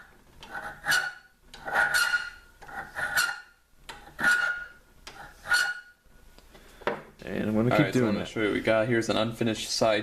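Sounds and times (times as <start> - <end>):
file rasping on steel: 0.4 - 6.0.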